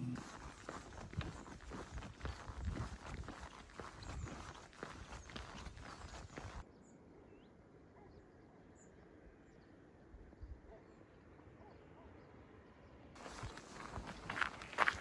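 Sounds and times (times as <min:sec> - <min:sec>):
hiking footsteps: 0:00.0 - 0:06.6, 0:13.2 - 0:15.0.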